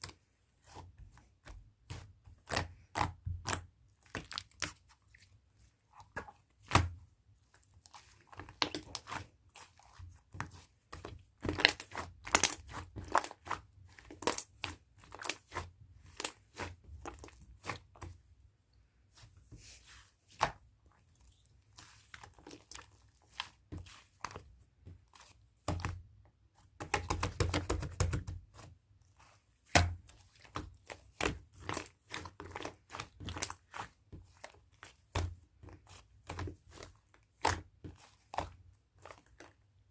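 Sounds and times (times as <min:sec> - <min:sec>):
slime squishing with sticky pops: 0:00.0 - 0:05.0, 0:07.6 - 0:18.2, 0:29.6 - 0:39.9.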